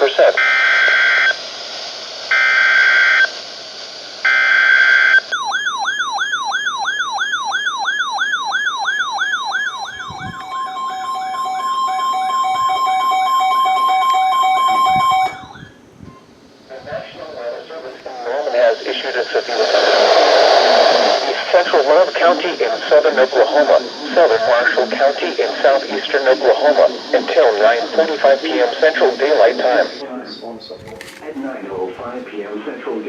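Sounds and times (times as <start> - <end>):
siren-like sweeping tone: 4.3 - 15.7
steady two-tone attention signal: 4.3 - 16.2.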